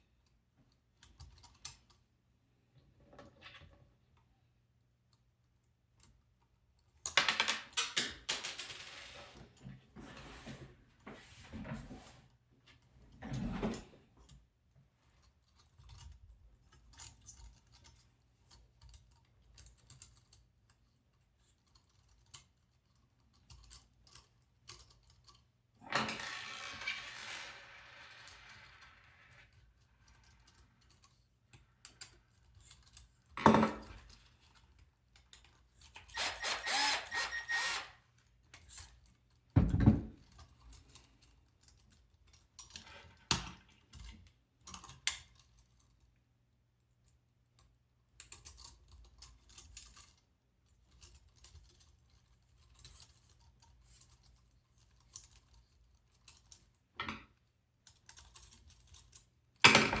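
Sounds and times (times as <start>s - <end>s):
small parts clicking and tapping: 15.2s - 39.6s, 40.2s - 46.2s, 46.9s - 60.0s
parts rattling: 25.9s - 28.9s.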